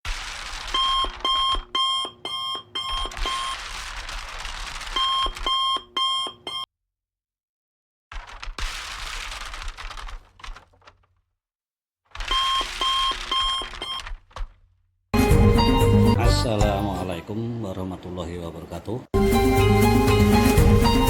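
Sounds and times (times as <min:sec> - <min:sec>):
electronic alarm beeps: 0:00.8 - 0:03.6, 0:05.0 - 0:06.7, 0:12.3 - 0:14.0.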